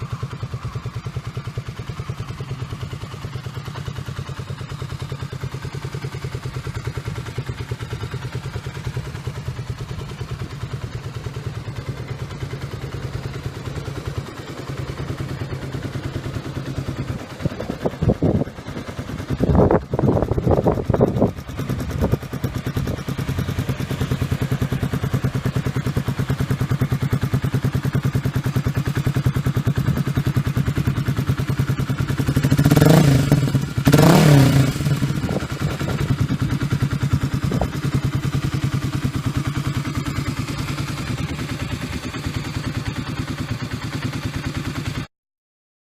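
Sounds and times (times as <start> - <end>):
motorcycle engine idling: 0.0 - 45.1
engine revving: 32.0 - 43.0.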